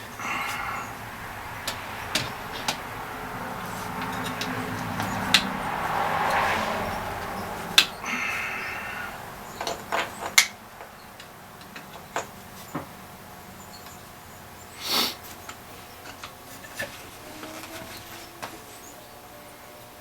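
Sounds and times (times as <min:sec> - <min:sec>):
tools clicking and knocking: 0:01.6 - 0:02.9, 0:03.6 - 0:08.0, 0:09.6 - 0:12.9.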